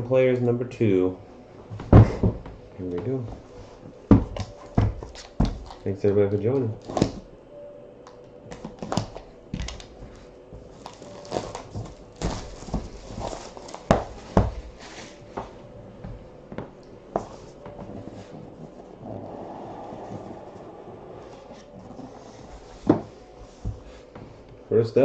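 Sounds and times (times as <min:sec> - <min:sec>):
wrapping crinkling and tearing: 0:10.7 - 0:15.2.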